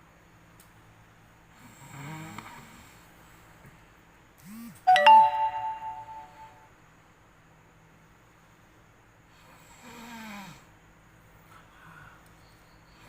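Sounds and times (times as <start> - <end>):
loud multi-tone chime: 4.9 - 6.6.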